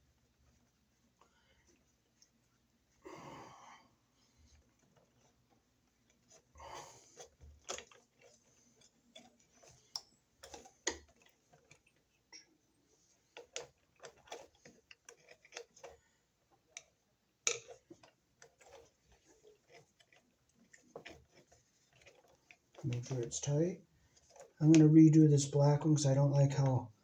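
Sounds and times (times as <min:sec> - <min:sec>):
wire nut clicking and scraping: 0:04.5 - 0:12.5, 0:13.2 - 0:16.0, 0:16.7 - 0:23.6.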